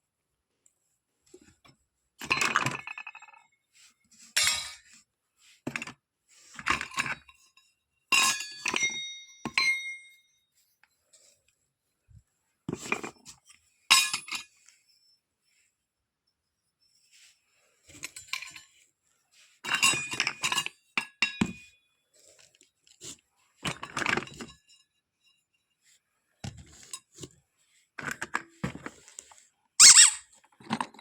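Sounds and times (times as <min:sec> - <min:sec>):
toy kitchenware clinking: 0:04.4 - 0:04.8, 0:08.2 - 0:10.1, 0:19.7 - 0:20.6, 0:29.8 - 0:31.0.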